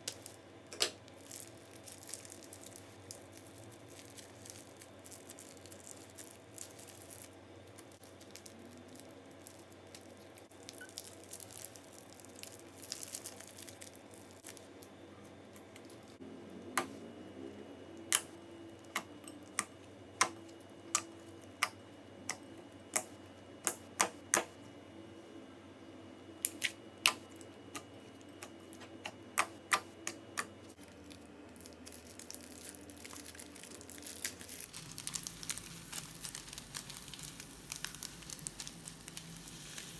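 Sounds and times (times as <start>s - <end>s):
slime crackling and popping: 0.0s - 14.9s, 30.8s - 39.9s.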